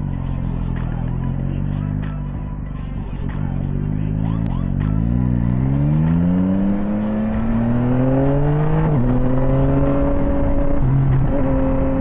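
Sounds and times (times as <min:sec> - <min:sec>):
motorcycle engine accelerating: 0:00.0 - 0:12.0.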